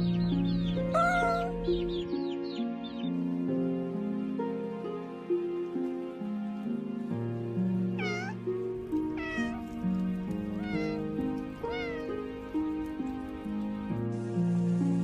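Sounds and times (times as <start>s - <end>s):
gentle background music: 0.0s - 15.0s
cat meowing: 0.9s - 1.6s, 8.0s - 13.1s.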